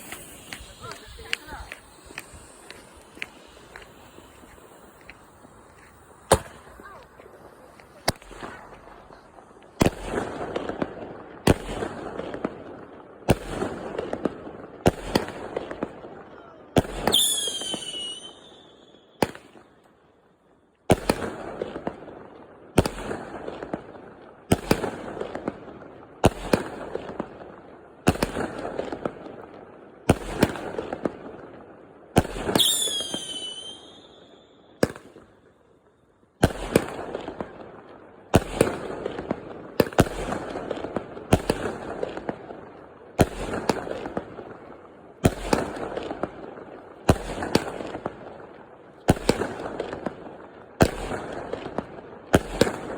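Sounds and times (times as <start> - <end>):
fireworks banging and crackling: 0.0 - 19.8, 20.9 - 52.9
whistling firework: 0.0 - 20.3, 24.5 - 27.4, 30.0 - 31.5, 32.1 - 48.2.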